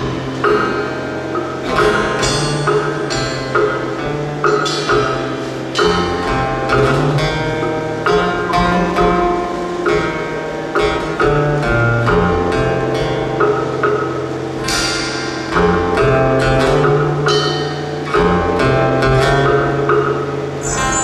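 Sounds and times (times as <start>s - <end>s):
plucked string instrumental music: 0.0s - 21.0s.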